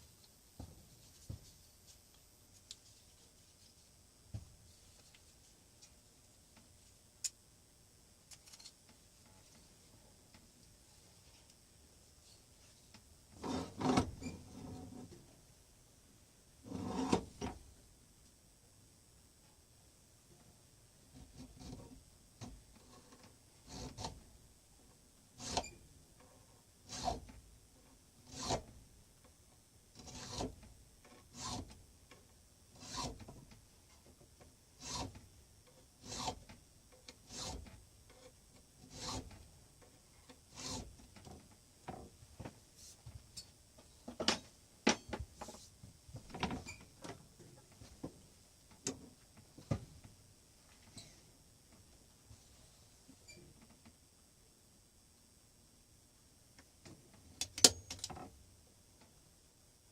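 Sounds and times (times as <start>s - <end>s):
hand file rasping on steel: 16.7s - 17.2s, 26.9s - 27.2s, 28.2s - 28.6s, 30.0s - 30.4s, 31.3s - 31.7s, 32.8s - 33.2s, 34.8s - 35.1s, 36.0s - 36.4s, 37.3s - 37.6s, 38.8s - 39.3s, 40.5s - 40.9s.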